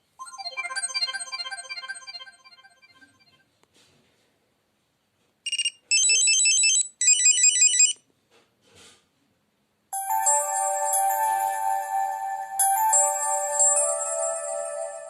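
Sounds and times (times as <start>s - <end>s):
phone ringtone melody: 0.2s - 3.3s, 5.5s - 8.0s, 10.0s - 15.0s.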